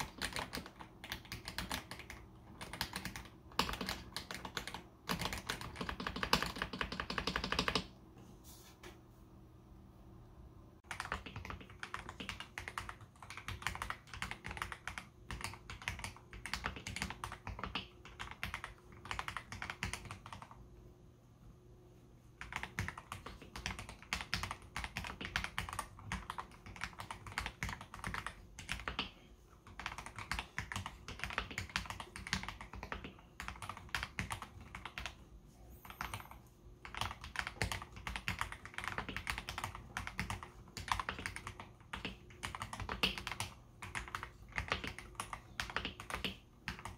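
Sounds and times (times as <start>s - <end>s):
mechanical keyboard typing: 0.0s - 8.0s, 10.8s - 20.6s, 22.4s - 35.2s, 35.8s - 46.9s.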